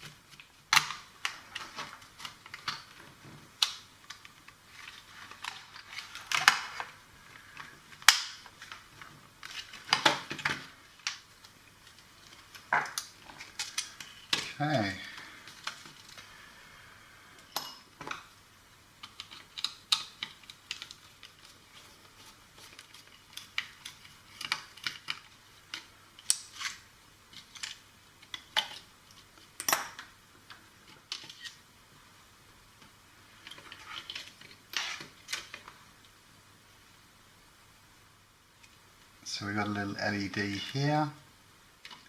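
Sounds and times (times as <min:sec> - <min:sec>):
plastic clicks and clatter: 0:22.6 - 0:31.6.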